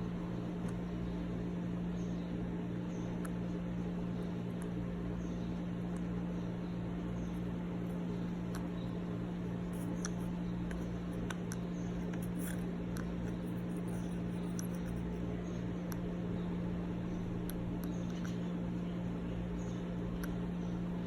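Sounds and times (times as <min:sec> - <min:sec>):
steady low hum: 0:00.0 - 0:21.0
faint ticks and clicks: 0:17.4 - 0:18.6, 0:19.6 - 0:20.8.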